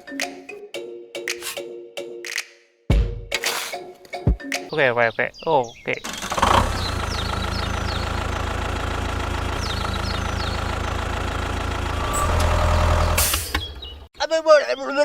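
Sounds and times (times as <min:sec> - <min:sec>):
engine idling: 0:06.1 - 0:13.2.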